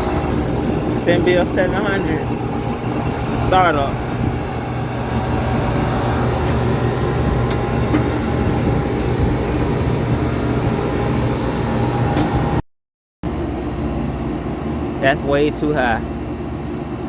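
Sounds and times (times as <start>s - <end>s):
air conditioning unit humming: 0.0s - 12.6s, 13.3s - 17.0s
high steady whine: 0.0s - 12.6s, 13.2s - 17.0s.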